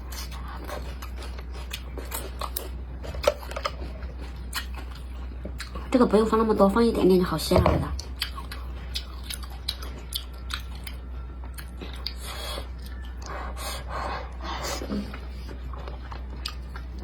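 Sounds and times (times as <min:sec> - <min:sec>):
person chewing close to microphone: 0:00.0 - 0:06.0, 0:08.0 - 0:17.0.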